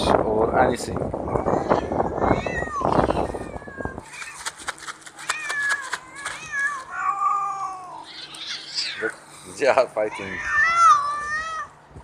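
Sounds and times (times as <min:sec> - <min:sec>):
noisy rustling: 0:00.0 - 0:07.0
cats meowing and caterwauling: 0:01.2 - 0:09.3, 0:10.0 - 0:11.8
cat yowl: 0:01.3 - 0:04.3, 0:05.3 - 0:09.1, 0:10.1 - 0:11.7.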